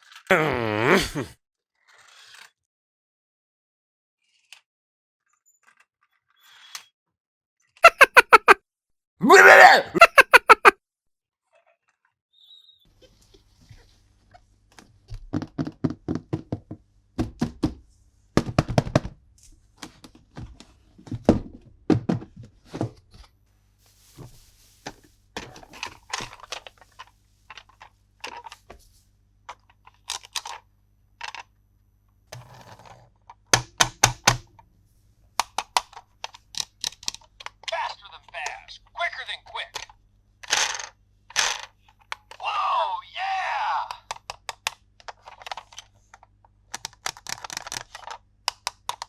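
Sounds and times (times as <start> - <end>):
plastic toy pieces clicking: 29.6 - 30.6, 31.2 - 31.5, 35.4 - 37.7, 39.7 - 41.7, 44.0 - 49.0.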